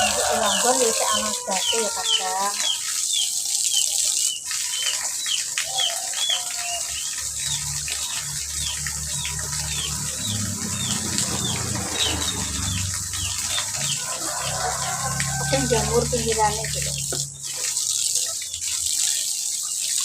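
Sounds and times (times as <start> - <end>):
small birds chirping: 1.4 - 14.1.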